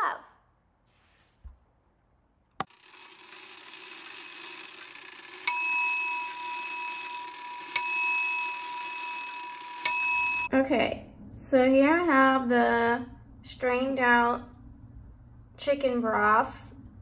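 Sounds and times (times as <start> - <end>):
bell ringing: 5.1 - 10.5.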